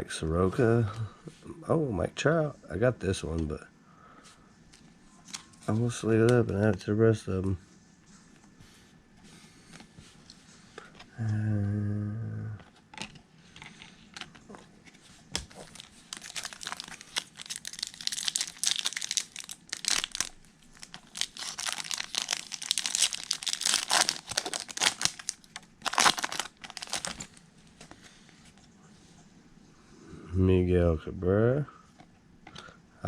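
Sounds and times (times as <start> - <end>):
foil wrapper tearing and crinkling: 15.5 - 27.4.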